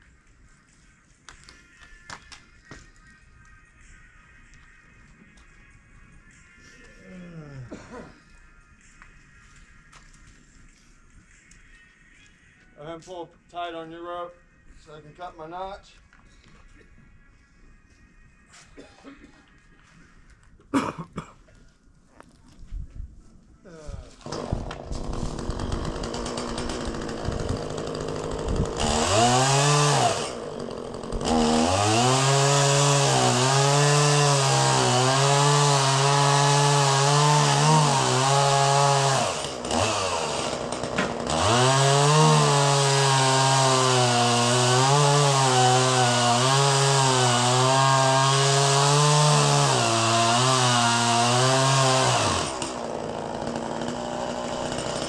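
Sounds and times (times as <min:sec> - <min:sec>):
chainsaw cutting a tree: 0:24.2 - 0:55.0.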